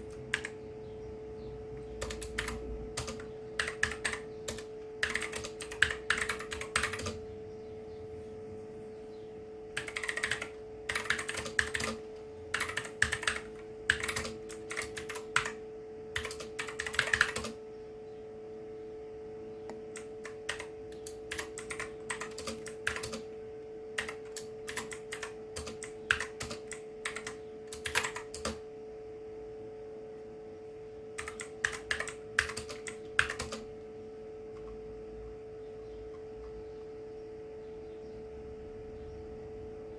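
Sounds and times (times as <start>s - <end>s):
mechanical keyboard typing: 0.0s - 0.6s, 1.9s - 7.2s, 9.8s - 17.6s, 19.9s - 23.3s, 24.0s - 28.6s, 31.2s - 33.7s
low electrical hum: 0.0s - 39.9s.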